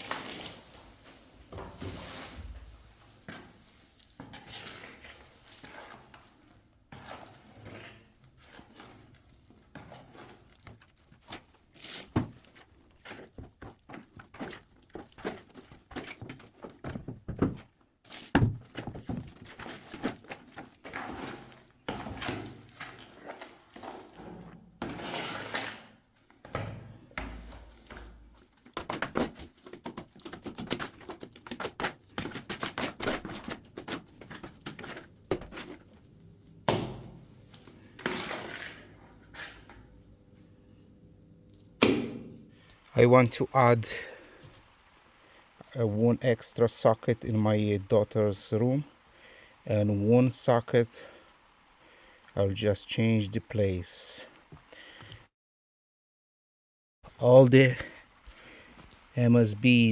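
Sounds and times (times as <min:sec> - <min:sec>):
trowel scraping and knocking plaster: 0:00.0 - 0:40.0.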